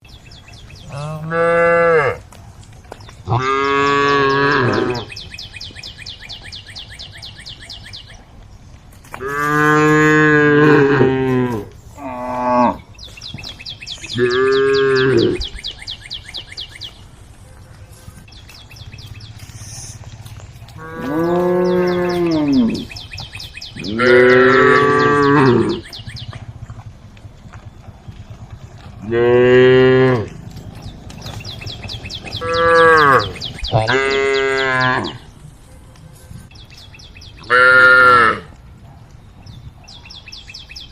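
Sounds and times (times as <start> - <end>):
cows mooing: 0.8 - 2.3, 3.2 - 5.2, 9.2 - 12.9, 14.0 - 15.6, 20.7 - 26.9, 28.1 - 35.3, 37.4 - 38.6.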